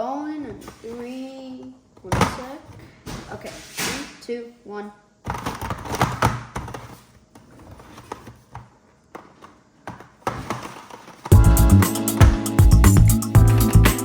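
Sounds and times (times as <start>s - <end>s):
background music with beat: 11.3s - 14.0s.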